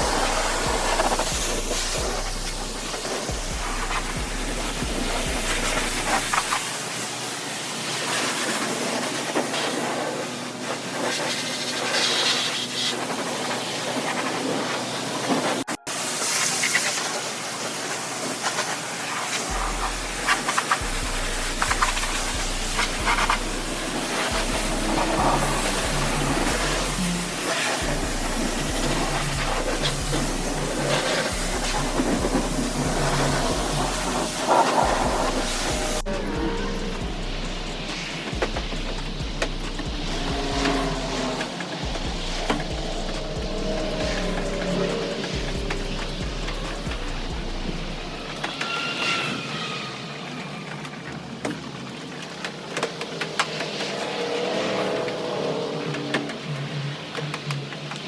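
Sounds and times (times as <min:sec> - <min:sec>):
music with bassline: 0:00.0 - 0:06.7, 0:19.5 - 0:48.5
high-pressure water spray hissing: 0:00.0 - 0:58.0.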